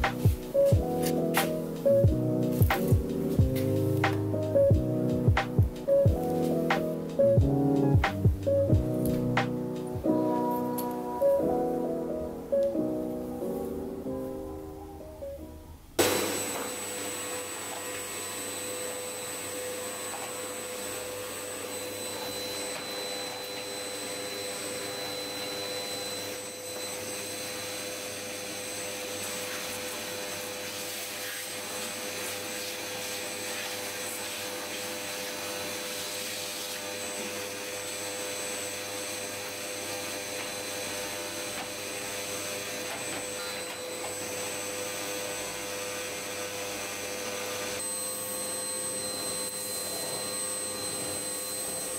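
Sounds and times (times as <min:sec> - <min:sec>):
vacuum cleaner running: 0:00.0 - 0:15.1, 0:16.0 - 0:51.9.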